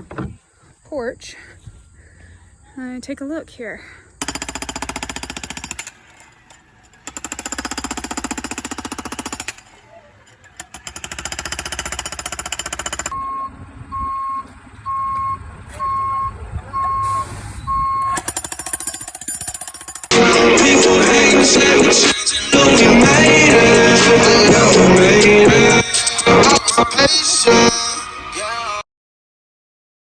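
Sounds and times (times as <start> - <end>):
jackhammer hammering: 4.2 - 13.2, 18.1 - 25.9
reversing alarm beeping: 13.1 - 18.4.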